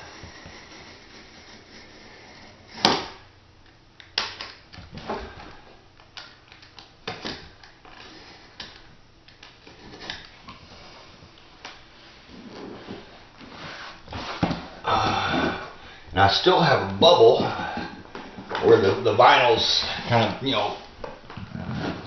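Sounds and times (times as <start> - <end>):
utility knife cutting vinyl: 0.0 - 3.2.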